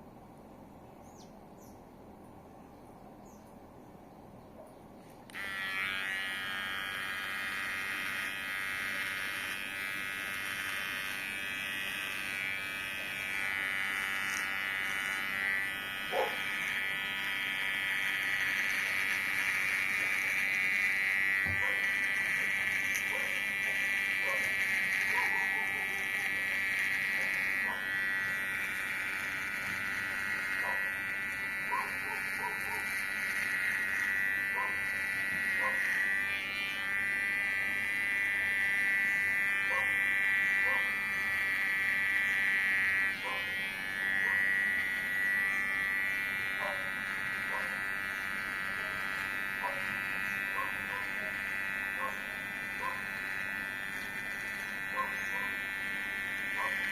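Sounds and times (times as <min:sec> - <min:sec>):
electric hair clipper buzzing: 0:05.1 - 0:56.9.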